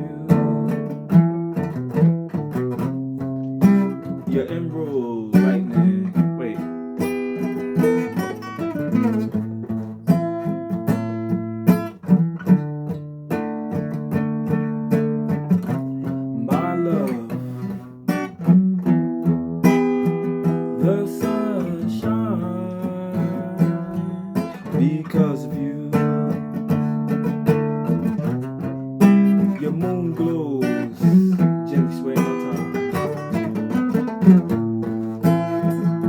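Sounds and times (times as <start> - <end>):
acoustic guitar strumming chords: 0.0 - 36.0.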